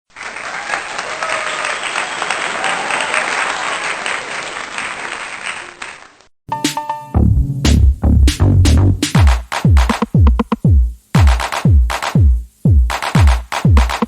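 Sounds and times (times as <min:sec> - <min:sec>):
crowd applause: 0:00.1 - 0:06.2.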